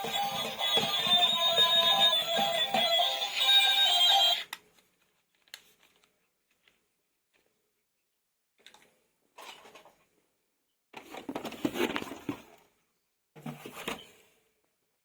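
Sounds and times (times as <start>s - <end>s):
clattering and rustling handling: 11.0s - 12.7s.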